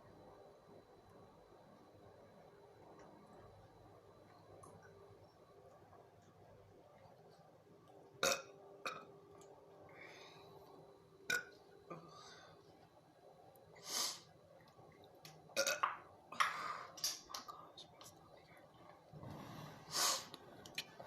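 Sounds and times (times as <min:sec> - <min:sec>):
person burping: 0:08.2 - 0:09.1, 0:11.3 - 0:12.0, 0:15.6 - 0:16.6
breathing: 0:09.9 - 0:10.8, 0:11.9 - 0:12.6, 0:16.4 - 0:17.0.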